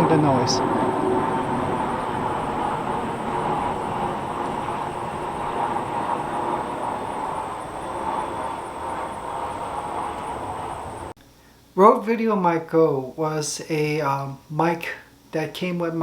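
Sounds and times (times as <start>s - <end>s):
traffic-like rush: 0.0s - 11.2s.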